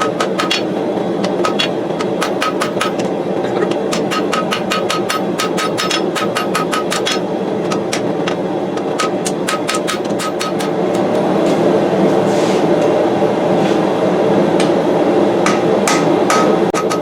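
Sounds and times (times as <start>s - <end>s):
hammer striking steel on anvil: 0.0s - 3.1s, 3.7s - 11.3s, 15.5s - 17.0s
gas forge burner rushing: 0.0s - 17.0s.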